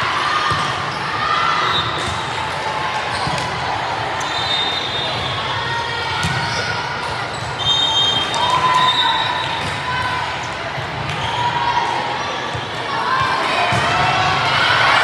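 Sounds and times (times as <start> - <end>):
crowd chatter: 0.0 - 15.0
sneaker squeaks on floor: 4.2 - 5.4, 7.3 - 9.8.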